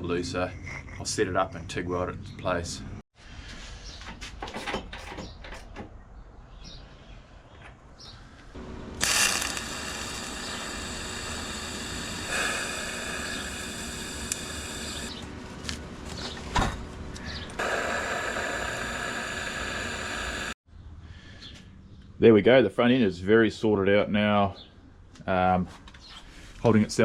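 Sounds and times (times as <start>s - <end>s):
welding arc buzzing: 8.6s - 16.3s, 17.1s - 20.6s.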